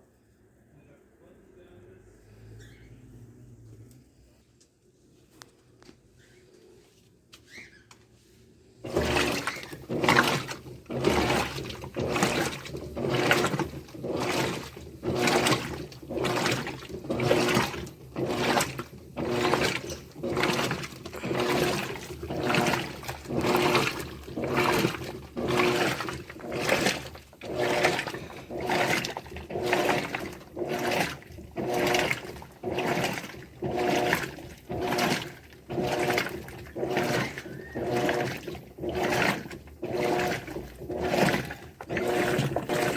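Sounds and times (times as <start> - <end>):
washing machine motor hum: 8.7 - 42.9
water sloshing in washing machine: 8.7 - 42.9.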